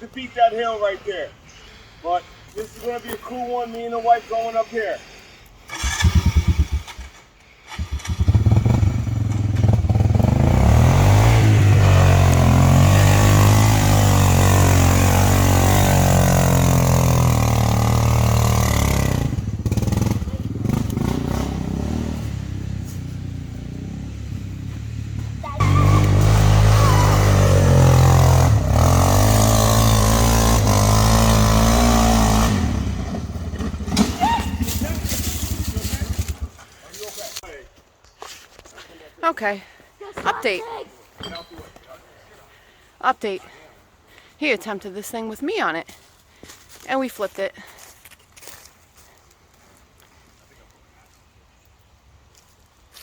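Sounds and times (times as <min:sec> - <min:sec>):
atv engine revving: 0:05.7 - 0:36.6.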